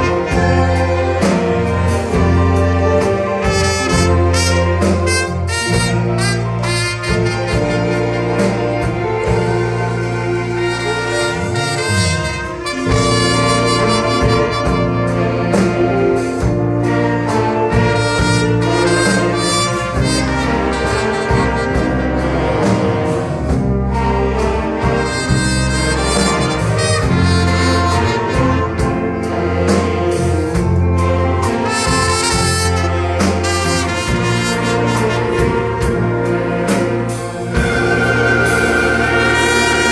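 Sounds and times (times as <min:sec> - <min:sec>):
orchestra playing held chords: 0:00.0 - 0:39.9
trumpets and trombones: 0:00.0 - 0:39.9.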